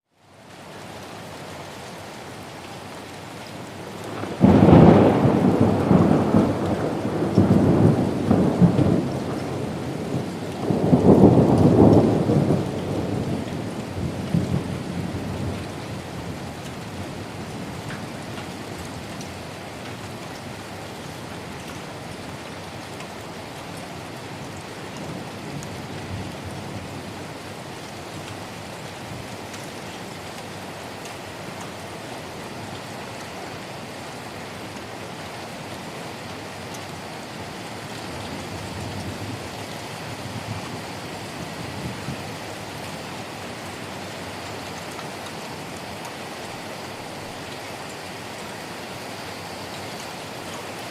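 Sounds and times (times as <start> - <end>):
heavy rain hissing: 0.2 - 50.9
raindrop ticks: 16.6 - 20.6, 21.6 - 26.4, 29.2 - 31.8.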